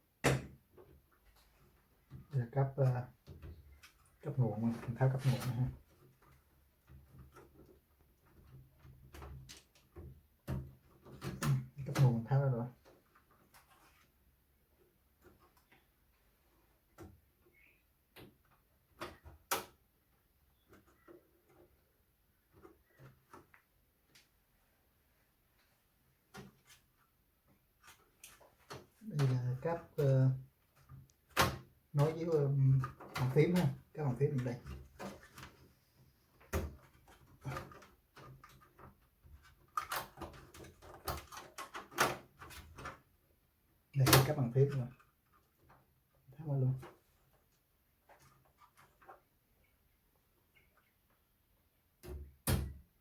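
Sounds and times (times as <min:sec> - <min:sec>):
clicks and knocks of computer parts: 0:30.8 - 0:35.6, 0:36.4 - 0:43.0, 0:44.0 - 0:44.8.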